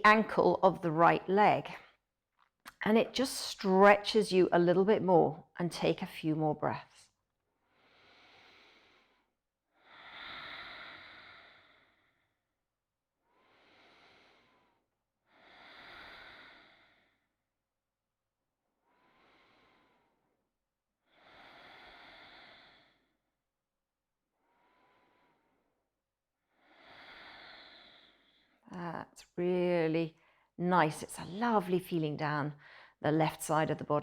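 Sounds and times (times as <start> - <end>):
slow deep breathing: 7.5 - 12.5, 13.2 - 17.4, 18.8 - 20.4, 21.0 - 23.3, 24.3 - 25.9, 26.5 - 28.7.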